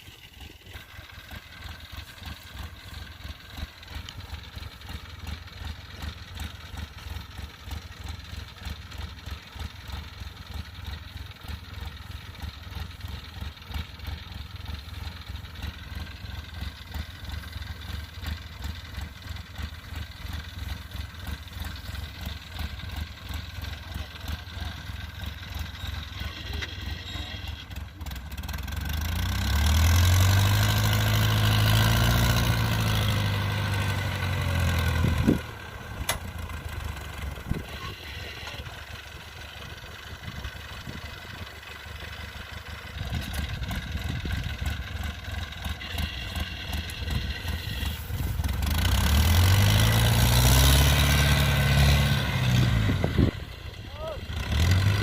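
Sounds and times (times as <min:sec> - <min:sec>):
diesel engine pulsing rumble: 0:00.0 - 0:55.0.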